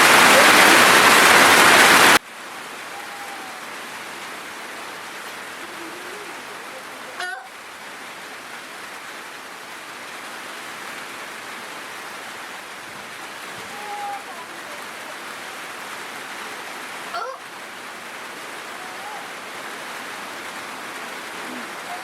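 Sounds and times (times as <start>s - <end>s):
loud rush of noise: 0.0s - 7.0s
rain falling: 0.0s - 22.0s.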